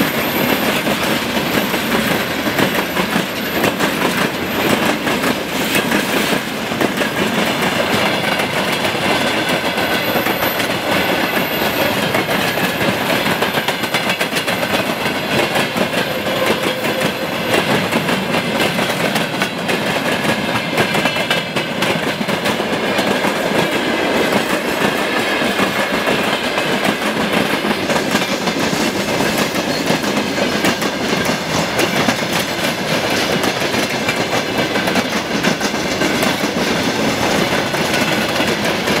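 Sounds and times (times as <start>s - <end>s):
train cars rolling on track: 0.0s - 39.0s.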